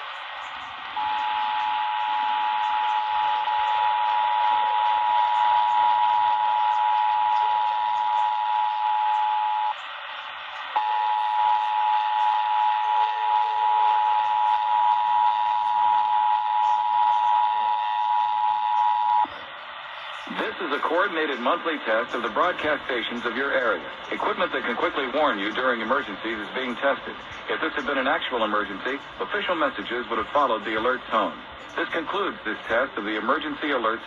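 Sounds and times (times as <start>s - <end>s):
radio hiss: 0.0s - 34.0s
two-tone alarm tone: 1.0s - 9.8s, 10.8s - 19.3s.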